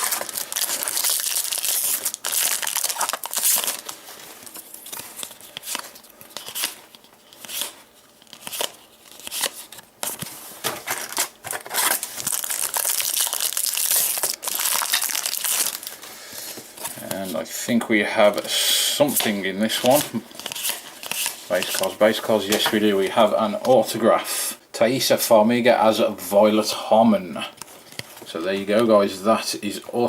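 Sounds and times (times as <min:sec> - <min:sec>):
wrappers tearing and crinkling: 0:00.0 - 0:09.8, 0:10.8 - 0:16.0, 0:19.2 - 0:22.6
cards being handled: 0:00.0 - 0:17.4, 0:19.1 - 0:22.9.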